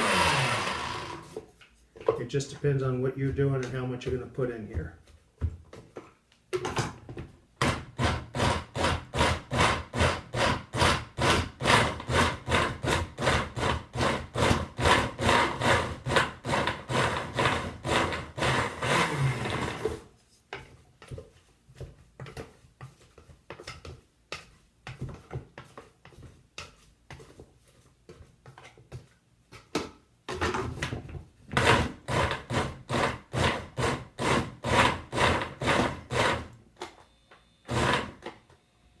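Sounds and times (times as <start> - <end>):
blender pulsing in water: 0.0 - 1.3, 16.9 - 19.9.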